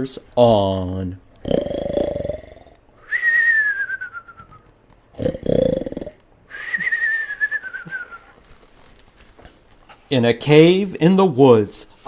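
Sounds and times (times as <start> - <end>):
rasping snort: 1.4 - 2.8, 5.2 - 6.2
falling whistle snore: 3.0 - 4.7, 6.5 - 8.4.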